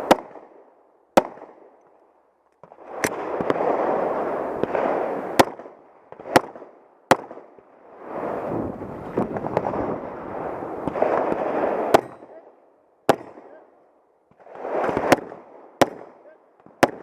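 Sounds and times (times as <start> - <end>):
pistol shots: 0.0 - 1.8, 3.0 - 7.5, 10.8 - 12.4, 13.1 - 13.6, 14.8 - 17.0.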